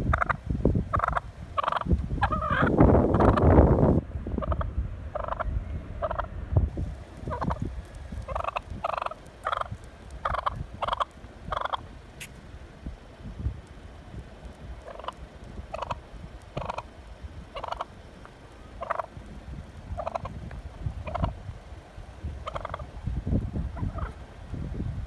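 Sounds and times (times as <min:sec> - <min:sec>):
low rumbling noise: 0:00.0 - 0:25.0
turkey calling: 0:00.9 - 0:03.4, 0:04.4 - 0:06.3, 0:07.3 - 0:07.6, 0:08.3 - 0:11.8, 0:14.8 - 0:16.0, 0:16.6 - 0:16.9, 0:17.5 - 0:18.0, 0:18.8 - 0:19.1, 0:20.0 - 0:20.3, 0:22.4 - 0:22.8, 0:23.8 - 0:24.2.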